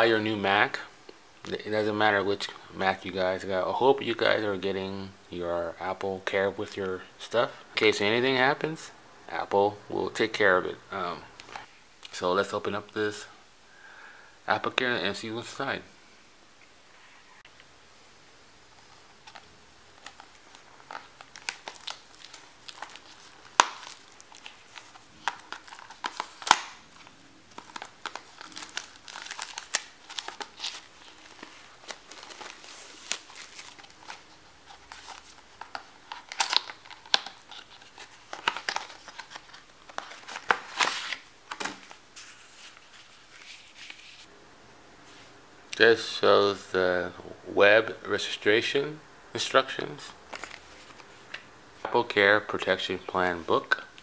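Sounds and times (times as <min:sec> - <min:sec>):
package wrapping crinkling and tearing: 0:19.0 - 0:44.3, 0:50.3 - 0:51.1.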